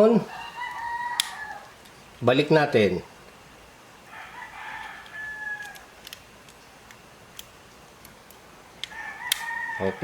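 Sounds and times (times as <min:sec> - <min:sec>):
rooster crowing: 0:00.2 - 0:01.8, 0:04.1 - 0:05.9, 0:08.9 - 0:10.0.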